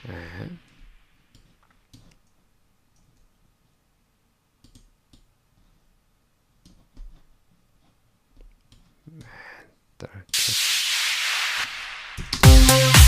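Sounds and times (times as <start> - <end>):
faint background hiss: 0.0 - 12.4
computer mouse clicks: 4.6 - 5.3.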